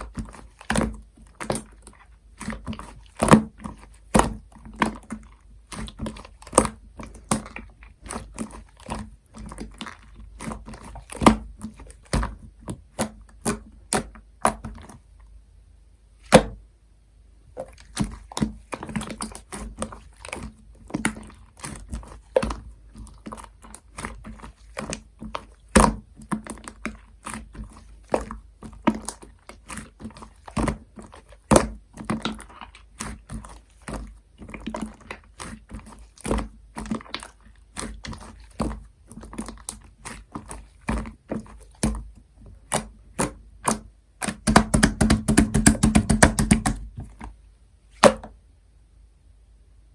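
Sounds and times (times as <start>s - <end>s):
hands kneading sticky slime: 0.0s - 15.4s, 16.0s - 16.6s, 17.5s - 48.4s
loud slime pop: 42.7s - 46.9s, 48.0s - 48.3s.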